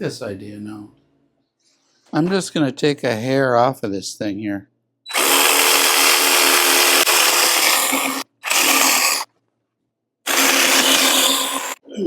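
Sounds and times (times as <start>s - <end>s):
power tool running on wood: 5.1s - 9.3s, 10.3s - 11.8s.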